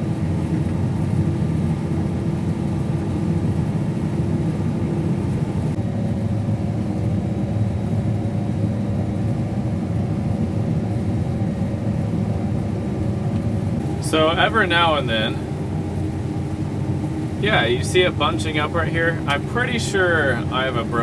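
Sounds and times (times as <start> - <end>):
combine harvester drone: 13.2 - 21.0.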